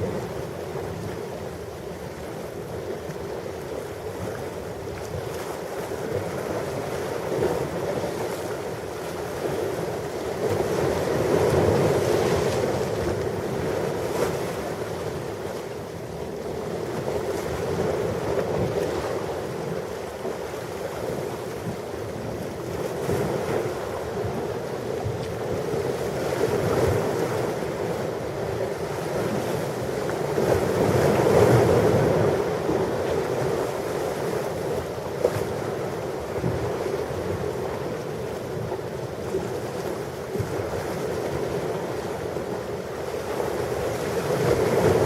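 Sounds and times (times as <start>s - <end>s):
ocean waves washing ashore: 0.0s - 45.0s.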